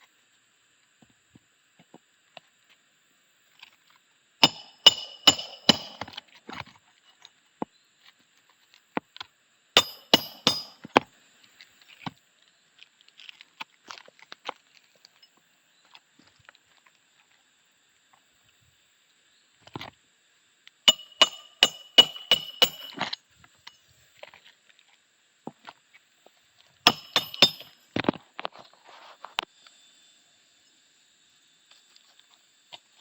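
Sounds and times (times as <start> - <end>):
hammer striking nail: 4.4 - 6.1, 9.8 - 10.9, 20.9 - 23.0, 26.9 - 27.8.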